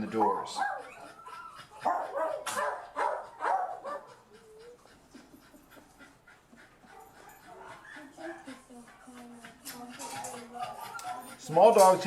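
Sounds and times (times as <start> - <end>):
small dogs yipping: 0.0 - 5.0, 6.8 - 12.0
dogs panting: 0.0 - 12.0
dog whining: 0.2 - 4.9, 6.9 - 11.4.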